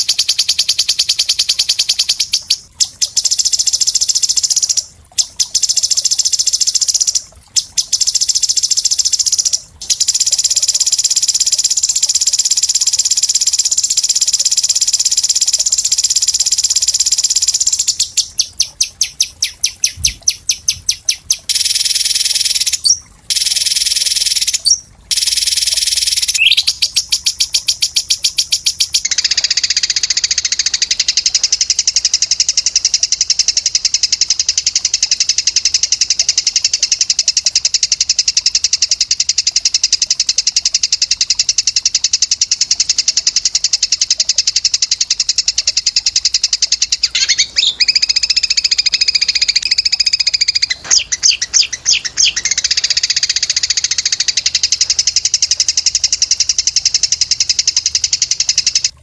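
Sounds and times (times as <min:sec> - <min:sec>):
high-pitched bird song trill: 0:00.0 - 0:14.8, 0:15.7 - 0:31.3, 0:46.7 - 0:54.9.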